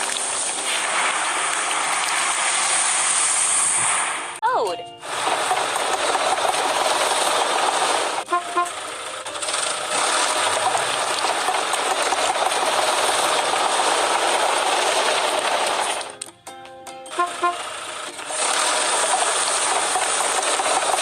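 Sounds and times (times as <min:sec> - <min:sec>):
steady rushing noise: 0:00.0 - 0:04.4, 0:05.1 - 0:16.1
short tones: 0:17.1 - 0:17.6.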